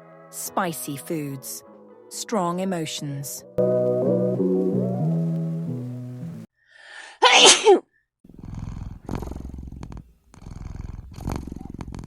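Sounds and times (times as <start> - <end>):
background music chords: 0.0 - 6.5
intake of breath: 6.6 - 7.2
loud sneeze: 7.2 - 7.9.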